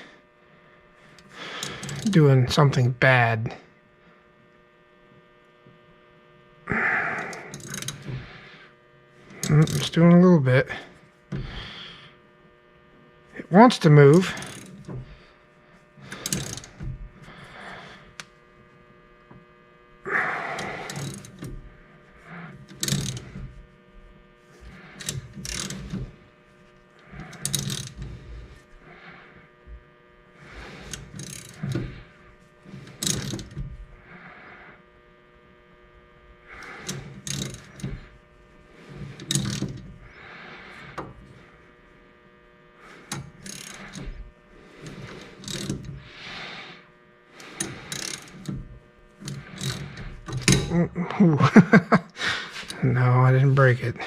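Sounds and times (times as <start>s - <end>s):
faint steady hum: 0.0s - 54.0s
socket ratchet clicking: 7.2s - 8.0s, 14.3s - 14.9s, 16.1s - 16.8s, 20.6s - 21.5s, 22.6s - 23.3s, 25.0s - 26.0s, 27.3s - 28.0s, 30.8s - 31.9s, 32.8s - 33.6s, 36.6s - 37.9s, 39.2s - 39.8s, 43.1s - 44.0s, 44.8s - 46.0s, 47.4s - 48.6s, 49.2s - 50.7s.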